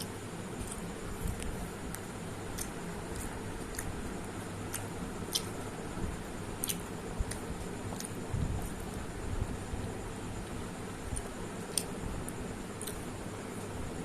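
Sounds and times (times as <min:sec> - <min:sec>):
mouth clicks and smacks chewing: 0:00.0 - 0:04.1, 0:04.7 - 0:05.6, 0:06.6 - 0:08.2, 0:11.1 - 0:12.0
steady low hum: 0:00.0 - 0:14.0.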